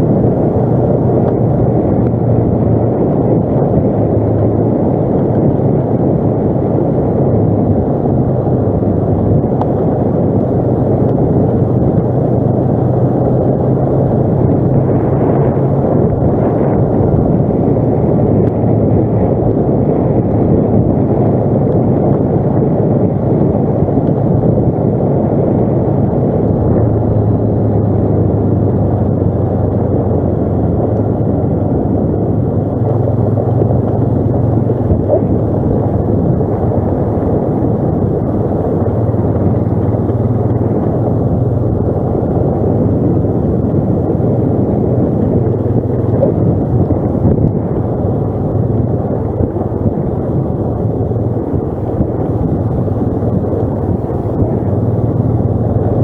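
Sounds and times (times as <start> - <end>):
atv engine droning: 0.0 - 56.0
wind rumble on microphone: 0.0 - 56.0.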